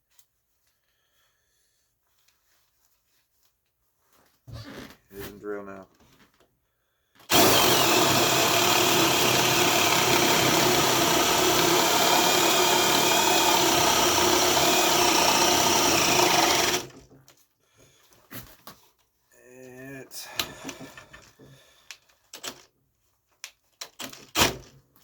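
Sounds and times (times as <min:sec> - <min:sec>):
cordless drill boring: 0:07.3 - 0:17.0.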